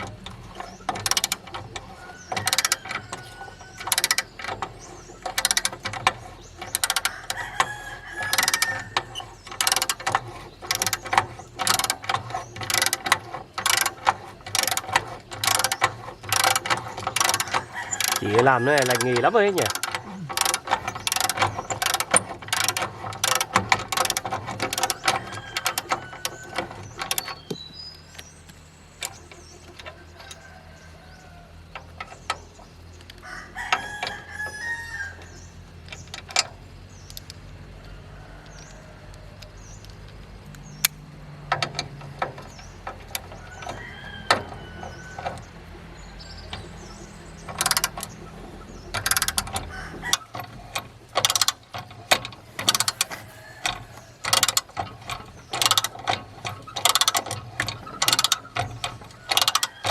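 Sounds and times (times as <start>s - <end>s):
hand tools knocking on metal: 0.0s - 27.7s, 41.5s - 59.9s
rooster crowing: 7.1s - 9.2s, 17.4s - 19.6s, 33.2s - 35.4s, 43.4s - 45.5s, 49.6s - 50.3s, 52.8s - 54.5s.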